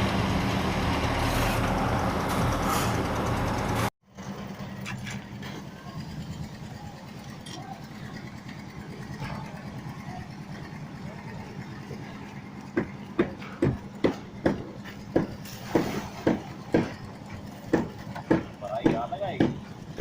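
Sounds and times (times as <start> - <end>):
engine humming: 0.0 - 20.0
sharp knocks: 17.7 - 19.6.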